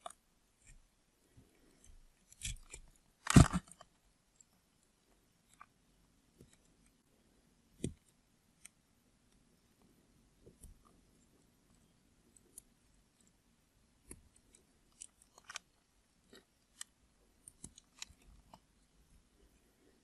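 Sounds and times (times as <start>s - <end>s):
knife cutting through soap: 1.6s - 3.8s.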